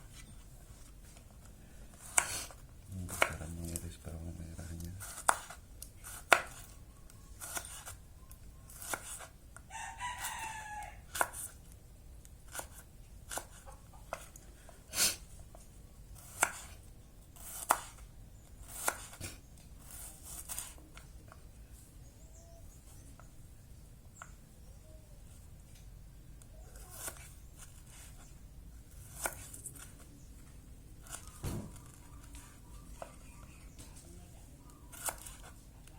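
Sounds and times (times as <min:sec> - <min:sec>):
knife chopping on cutting board: 0:02.0 - 0:02.5, 0:03.1 - 0:03.5, 0:05.0 - 0:06.7, 0:08.7 - 0:09.3, 0:16.2 - 0:16.7, 0:17.4 - 0:18.0, 0:18.7 - 0:20.7, 0:29.0 - 0:29.5
rooster crowing: 0:09.7 - 0:11.1.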